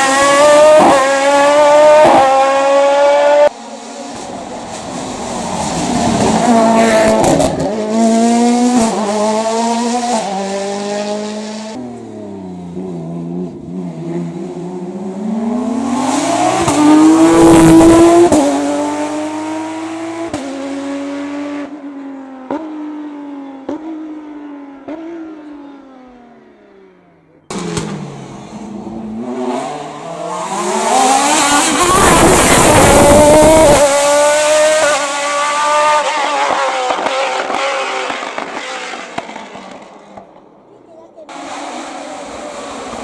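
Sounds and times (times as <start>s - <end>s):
race car engine at high revs: 0.0s - 43.0s.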